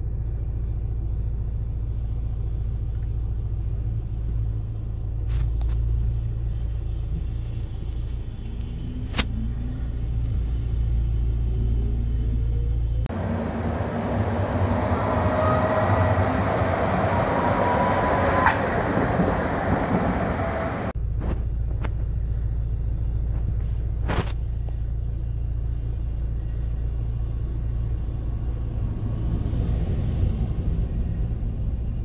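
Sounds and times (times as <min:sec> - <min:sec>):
tram running on rails: 0:05.3 - 0:21.9, 0:26.8 - 0:32.0
faint squealing tones: 0:14.2 - 0:19.1.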